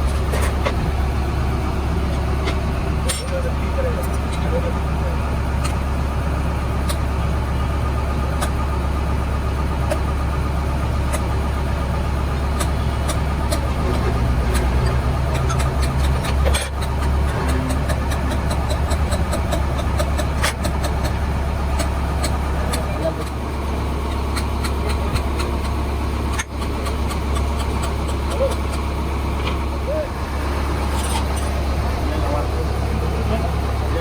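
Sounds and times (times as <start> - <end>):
low mechanical hum: 0.0 - 34.0
sharp clicks and taps: 12.6 - 21.2, 24.1 - 28.8.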